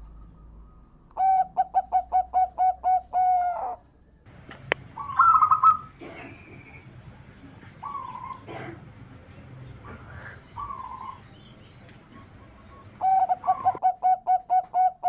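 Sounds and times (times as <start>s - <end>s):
dove cooing: 1.2s - 15.0s
high trilling bird call: 4.7s - 6.9s, 7.8s - 8.5s, 10.2s - 15.0s.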